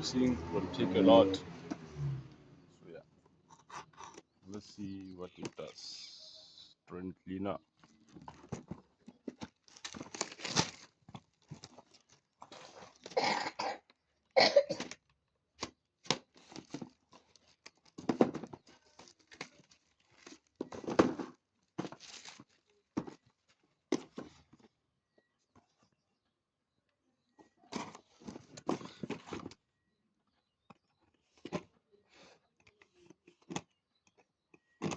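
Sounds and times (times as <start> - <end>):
packaging rustling and tearing: 7.8 - 13.2, 16.1 - 23.6.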